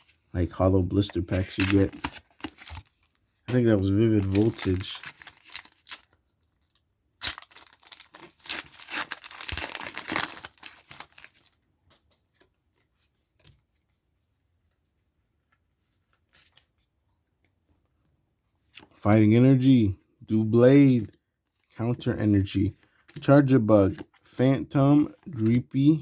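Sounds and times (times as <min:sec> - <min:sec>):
foil wrapper tearing and crinkling: 0:01.3 - 0:11.6.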